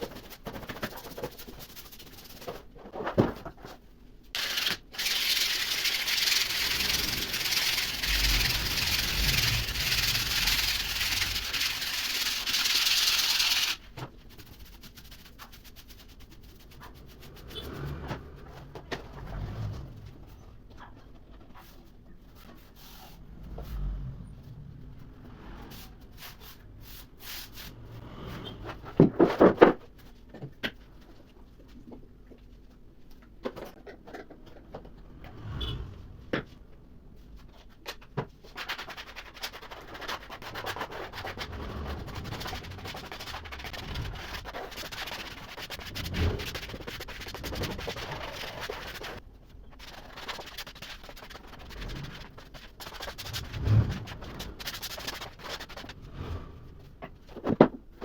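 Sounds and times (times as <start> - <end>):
rubbing and scraping on wood: 4.4 - 19.9, 38.4 - 57.6.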